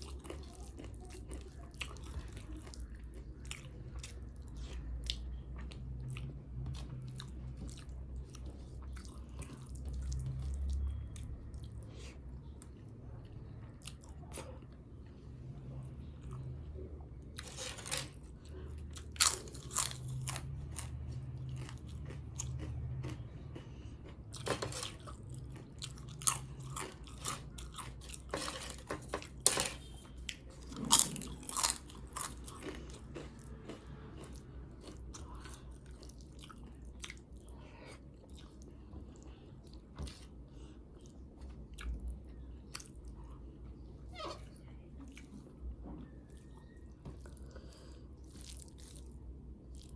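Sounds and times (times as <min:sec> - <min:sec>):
soft chewing: 0:00.0 - 0:49.9
crunching of crisp wafers: 0:17.3 - 0:37.6, 0:46.3 - 0:49.9.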